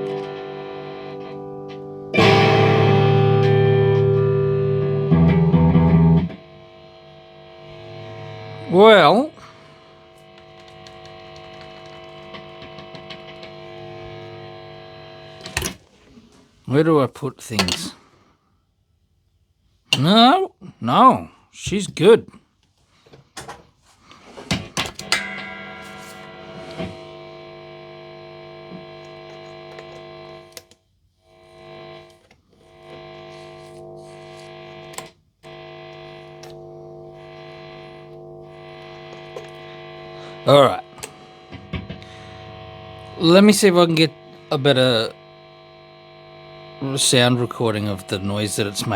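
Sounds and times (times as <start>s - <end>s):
electric guitar strings ringing: 0.0s - 6.5s, 12.3s - 15.7s, 25.0s - 29.1s, 35.8s - 45.1s
guitar handling ticks: 10.2s - 15.7s
click: 29.7s - 30.8s, 36.4s - 36.6s.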